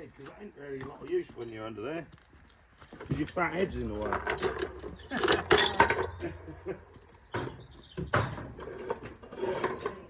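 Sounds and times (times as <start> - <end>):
metallic clinks of tools: 2.9 - 7.1.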